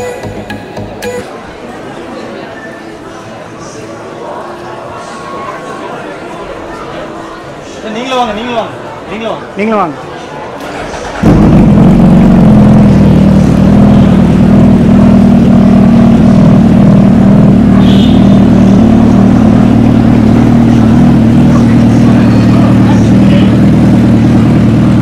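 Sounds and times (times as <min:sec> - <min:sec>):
vehicle engine running steady: 0:10.6 - 0:25.0.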